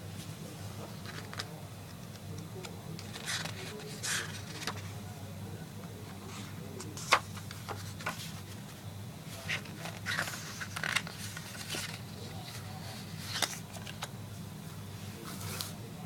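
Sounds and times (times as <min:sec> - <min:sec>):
steady low hum: 0:00.0 - 0:16.0
packaging being opened: 0:09.5 - 0:12.0.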